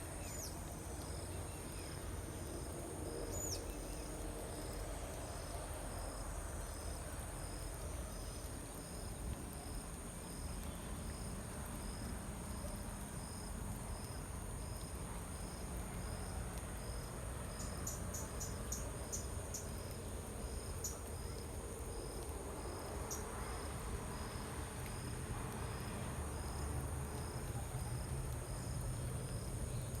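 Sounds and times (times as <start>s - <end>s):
crickets trilling: 0.0s - 30.0s.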